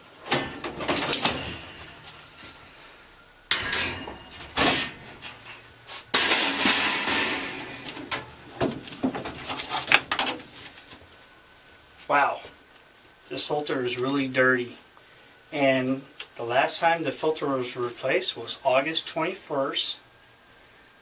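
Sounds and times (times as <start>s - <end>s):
sheet metal clanks and clicks: 0.2s - 2.0s, 3.5s - 5.6s, 6.2s - 10.5s.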